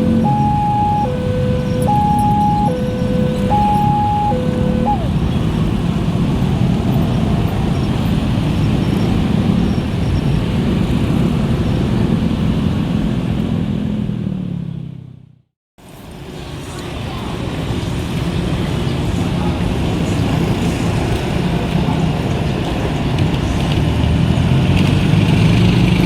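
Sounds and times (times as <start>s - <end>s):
two-tone level-crossing siren: 0.0s - 5.3s
road traffic noise: 0.0s - 26.0s.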